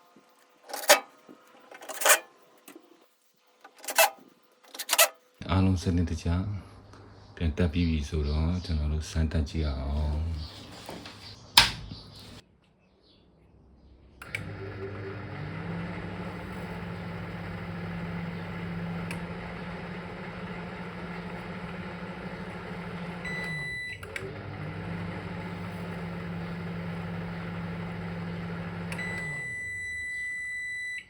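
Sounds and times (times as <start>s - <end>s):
microwave humming: 0.4s - 2.9s, 3.6s - 5.2s, 10.8s - 12.4s, 14.2s - 31.0s
microwave click: 11.6s - 11.9s, 14.2s - 25.2s, 25.8s - 30.2s
microwave beep: 14.3s - 31.0s.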